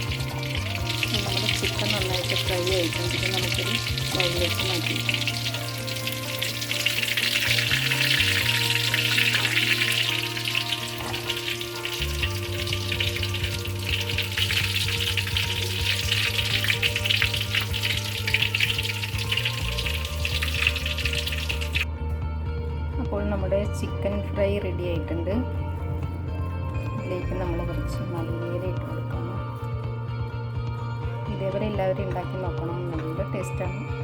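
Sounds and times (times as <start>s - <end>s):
chicken deep-frying in oil: 0.0s - 21.9s.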